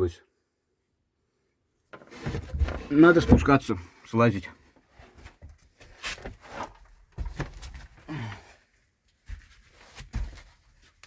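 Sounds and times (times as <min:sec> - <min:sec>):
person sighing: 0:08.0 - 0:08.6.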